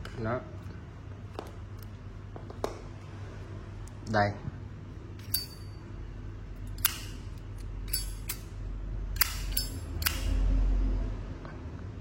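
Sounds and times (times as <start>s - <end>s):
metal lighters clinking: 5.2s - 5.8s, 6.7s - 10.3s.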